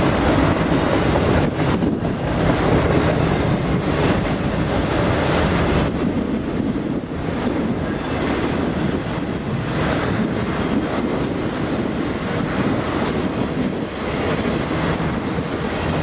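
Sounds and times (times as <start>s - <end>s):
train wheels rumbling on rail: 0.0s - 16.0s
high wheel squeal: 14.3s - 16.0s.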